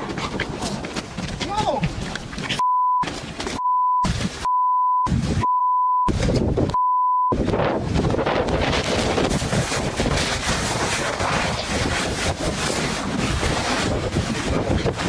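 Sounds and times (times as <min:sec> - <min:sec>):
noisy outdoor audio: 0:00.0 - 0:15.0
censor beep tone: 0:02.6 - 0:03.0, 0:03.6 - 0:06.1, 0:06.7 - 0:07.4.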